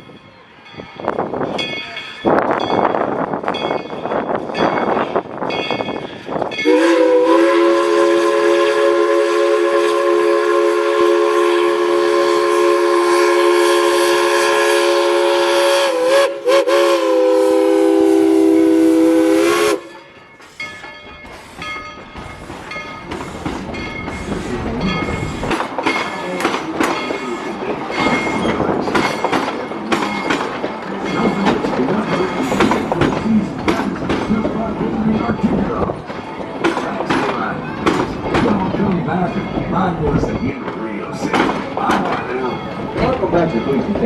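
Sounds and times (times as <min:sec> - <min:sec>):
steam locomotive exhaust chuffs: 0:05.9 - 0:38.9
steam locomotive whistle: 0:06.6 - 0:20.9.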